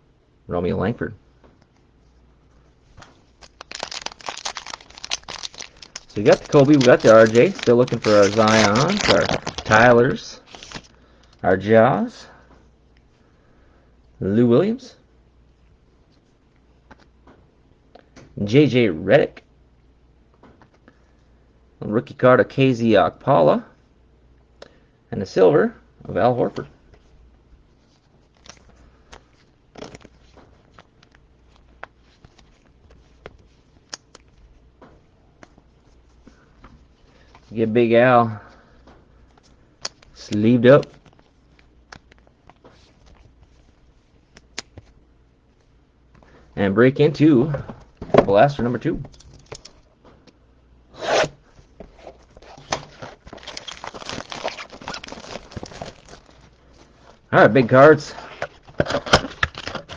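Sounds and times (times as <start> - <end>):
crinkly rustles of cards: 1.6 - 11.4, 26.0 - 50.2, 51.4 - 59.9
cards clicking: 3.0 - 9.8.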